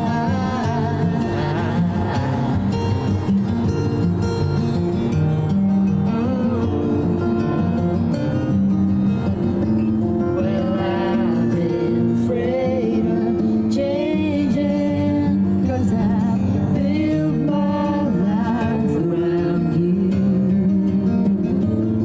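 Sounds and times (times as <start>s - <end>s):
person singing: 0.0s - 3.4s, 6.0s - 7.6s, 10.4s - 22.0s
guitar accompaniment: 0.0s - 22.0s.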